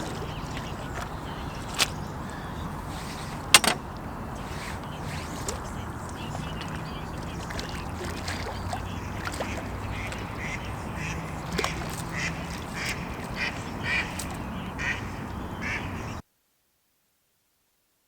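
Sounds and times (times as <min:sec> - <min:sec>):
outdoor background noise: 0:00.0 - 0:16.8
duck quacking: 0:09.0 - 0:14.2.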